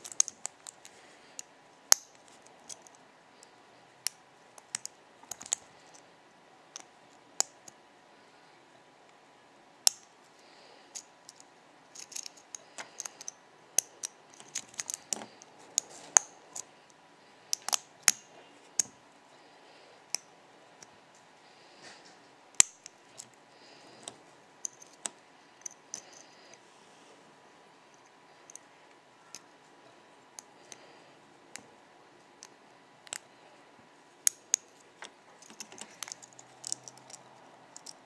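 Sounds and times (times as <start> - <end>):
metal clicks of lock picking: 35.4 - 38.0.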